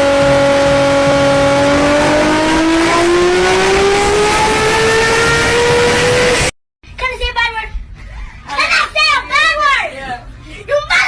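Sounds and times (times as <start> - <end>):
vehicle engine running: 0.0 - 6.5.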